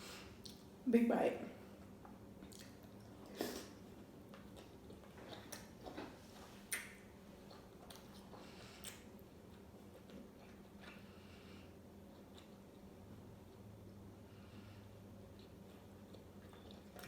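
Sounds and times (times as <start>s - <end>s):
close-miked chewing: 2.4s - 17.0s
wet mouth smacks and clicks: 6.7s - 7.0s.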